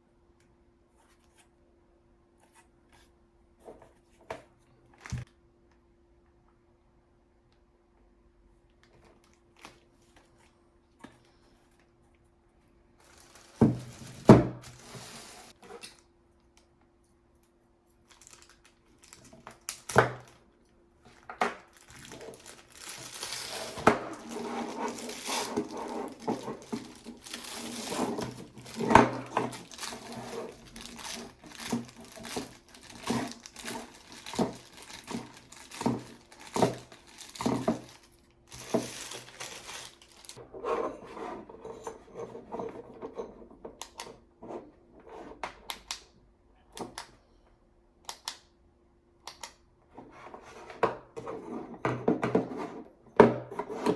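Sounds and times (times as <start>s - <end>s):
packaging crinkling and rustling: 13.0s - 15.6s, 18.0s - 20.5s, 21.1s - 40.4s.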